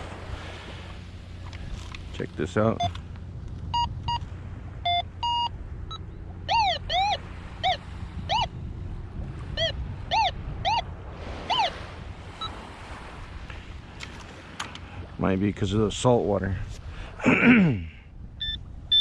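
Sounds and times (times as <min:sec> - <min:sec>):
pinpointer beeping and chirping: 0:03.7 - 0:04.2, 0:04.8 - 0:08.5, 0:09.6 - 0:10.9, 0:11.5 - 0:11.8, 0:18.4 - 0:19.0.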